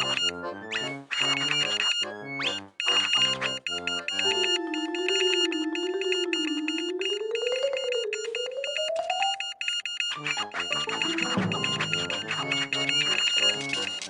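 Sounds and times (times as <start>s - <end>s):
rapid high beeps: 0.0s - 14.0s
wavering synthesizer tone: 10.7s - 13.2s
electronic music: 10.8s - 12.9s.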